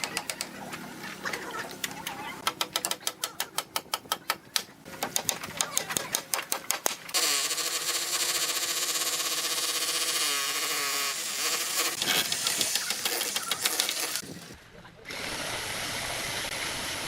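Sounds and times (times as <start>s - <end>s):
power tool motor running: 7.1s - 17.0s.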